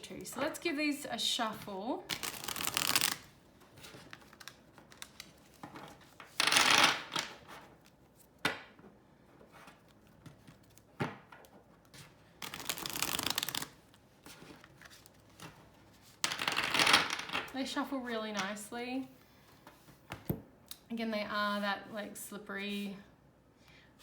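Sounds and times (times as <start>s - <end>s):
cards riffle shuffling: 2.1s - 3.3s, 12.4s - 15.1s.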